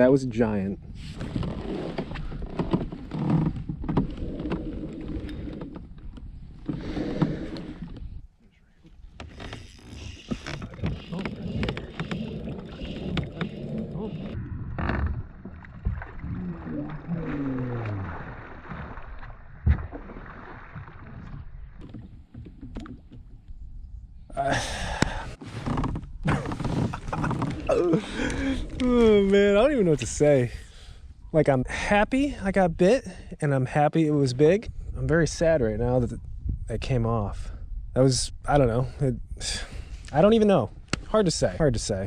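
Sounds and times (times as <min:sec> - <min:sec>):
fishing gear knocking and rubbing: 0:09.1 - 0:15.2, 0:25.6 - 0:27.8
low rumble: 0:10.6 - 0:21.8.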